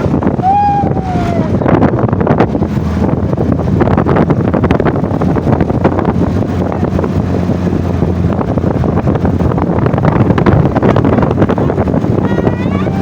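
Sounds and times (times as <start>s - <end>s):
vehicle engine running: 0.0s - 13.0s
wind buffeting microphone: 0.0s - 13.0s.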